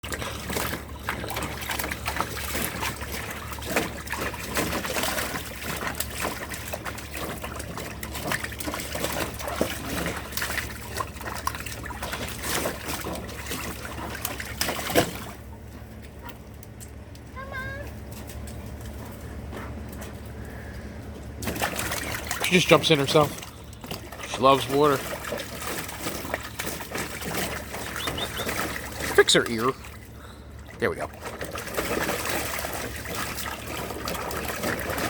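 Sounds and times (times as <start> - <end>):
water splashing and trickling: 0.0 - 35.0.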